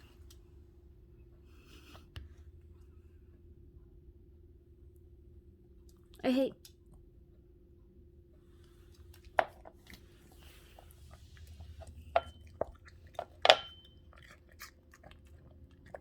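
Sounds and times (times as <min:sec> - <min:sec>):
faint steady hum: 0:00.0 - 0:16.0
dog crunching apple: 0:09.0 - 0:16.0.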